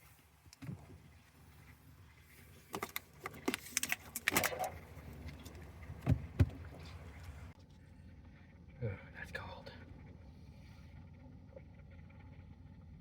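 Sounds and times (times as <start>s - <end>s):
water bottle clicking and rattling: 2.7s - 6.2s.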